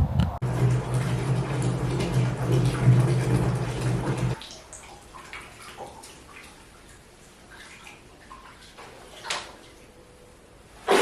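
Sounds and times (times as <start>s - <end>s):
water running from a tap: 0.4s - 4.4s.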